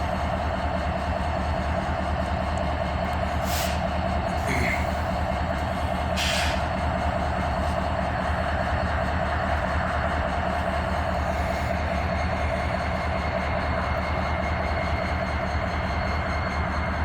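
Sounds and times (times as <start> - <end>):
locomotive low rumble: 0.0 - 17.0
short hisses: 6.2 - 6.6.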